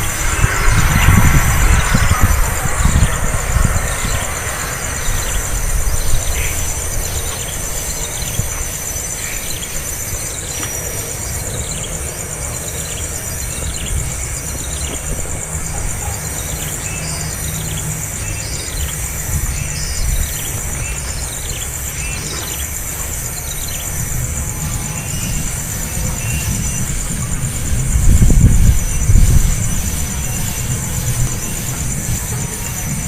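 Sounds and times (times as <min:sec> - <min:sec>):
low rumble: 0:00.0 - 0:21.8
shrill insect drone: 0:00.0 - 0:33.0.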